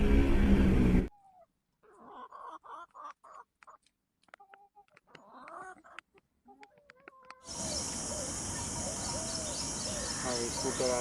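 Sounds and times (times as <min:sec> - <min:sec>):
fowl calling: 0:07.5 - 0:11.0.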